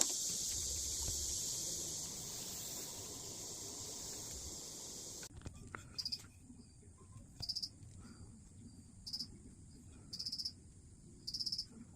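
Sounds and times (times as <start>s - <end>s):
cricket chirping: 0.0s - 5.3s, 6.0s - 6.8s, 7.4s - 11.8s
steady hiss: 0.0s - 5.3s.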